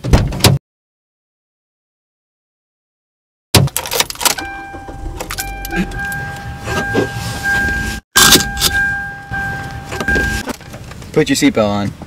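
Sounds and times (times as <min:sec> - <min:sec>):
steady high electronic tone: 0:04.4 - 0:10.4.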